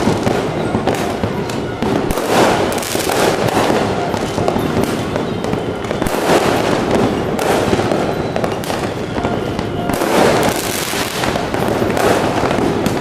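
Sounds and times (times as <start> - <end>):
fireworks crackling and banging: 0.0 - 13.0.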